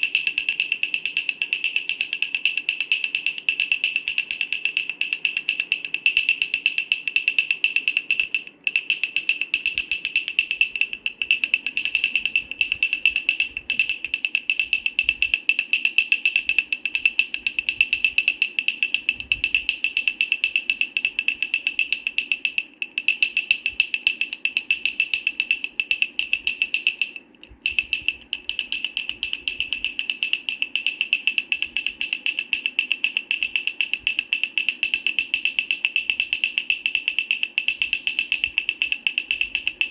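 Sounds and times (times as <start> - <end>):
wooden rattle shaken: 8.8 - 15.2.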